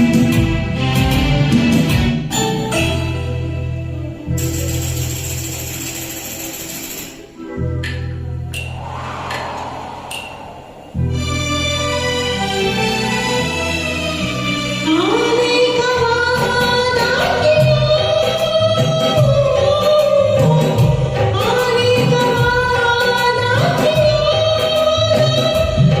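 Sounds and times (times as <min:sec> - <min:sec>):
woman singing: 0:14.9 - 0:26.0.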